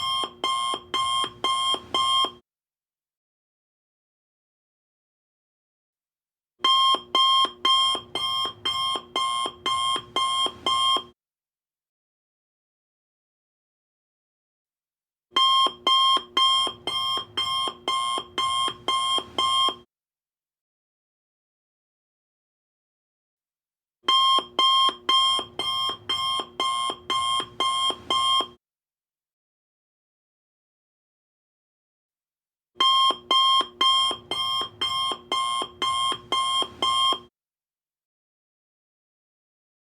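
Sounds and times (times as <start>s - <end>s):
electronic alarm beeping: 6.7s - 11.0s, 15.4s - 19.8s, 24.1s - 28.5s, 32.8s - 37.2s.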